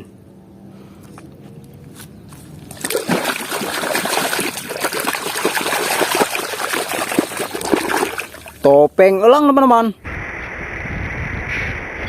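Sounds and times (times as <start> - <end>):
water running and splashing: 2.7 - 8.7.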